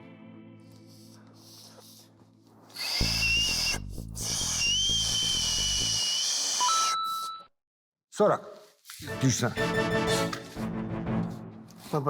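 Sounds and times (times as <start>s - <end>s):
low music: 0.0s - 1.6s, 9.0s - 12.0s
man whistling loudly: 3.0s - 7.2s.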